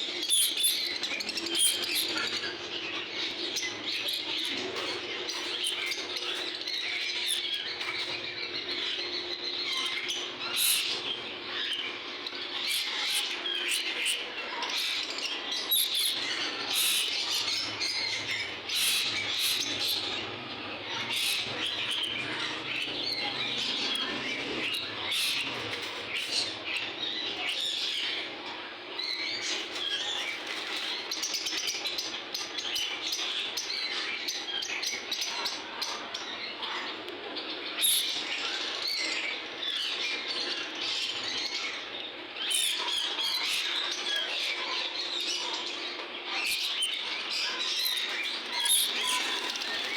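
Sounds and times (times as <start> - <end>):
lovebirds chattering and squawking: 0.1 - 49.9.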